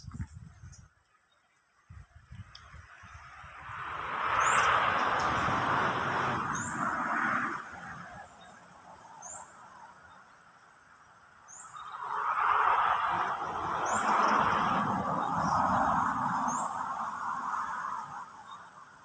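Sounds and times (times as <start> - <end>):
noisy rush: 2.0 - 10.9, 11.6 - 19.0
bird chirping: 11.5 - 12.1.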